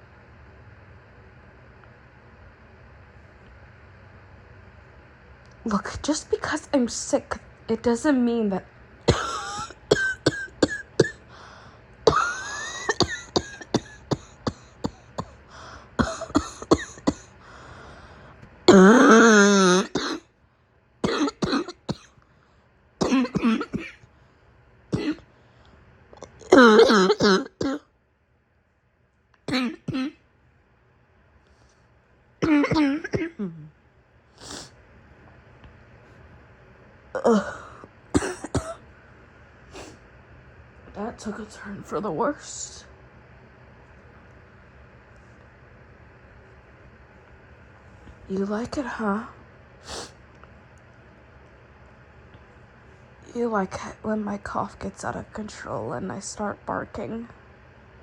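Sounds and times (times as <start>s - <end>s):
woman coughing: 9.1s - 11.2s, 12.1s - 15.4s, 16.0s - 17.3s, 18.7s - 20.2s, 21.0s - 22.1s, 23.0s - 24.0s, 25.0s - 25.2s, 26.4s - 27.8s, 29.5s - 30.2s, 32.4s - 33.7s, 38.2s - 38.8s.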